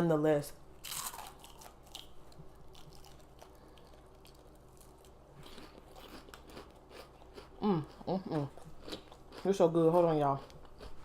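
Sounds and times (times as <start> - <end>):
steady low hum: 0.0 - 11.0
chewing food: 0.9 - 11.0.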